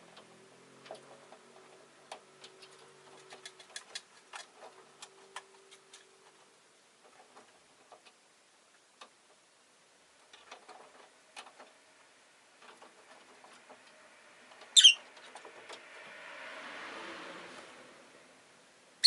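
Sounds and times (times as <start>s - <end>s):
lovebird chirp: 14.7s - 15.0s.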